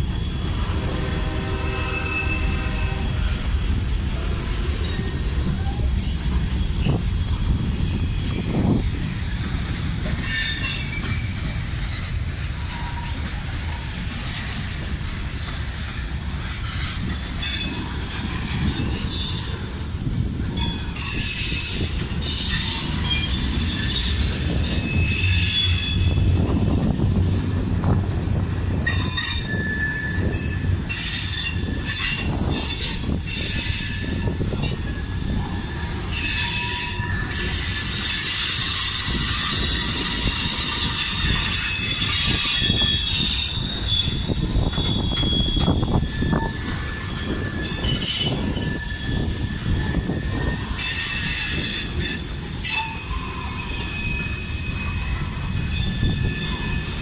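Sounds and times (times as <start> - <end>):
train wheels squealing: 0.0 - 3.5, 4.5 - 57.0
train low rumble: 0.0 - 57.0.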